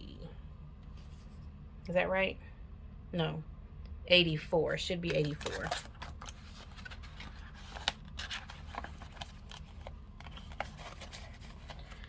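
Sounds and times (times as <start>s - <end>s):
steady low hum: 0.0s - 12.0s
paper rustling: 5.1s - 12.0s.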